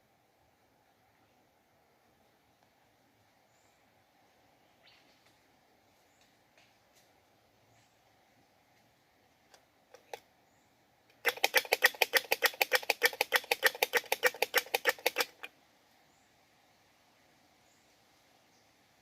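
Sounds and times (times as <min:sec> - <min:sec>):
squirrel chattering: 0:11.2 - 0:15.5.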